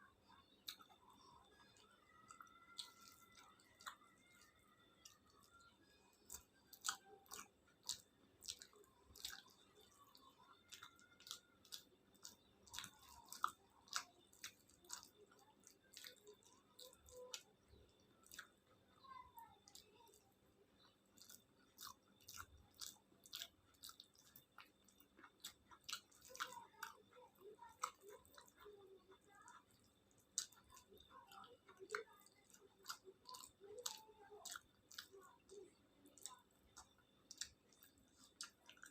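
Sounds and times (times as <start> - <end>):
wet chewing: 0.2 - 38.9
mouth clicks and smacks: 29.8 - 38.9.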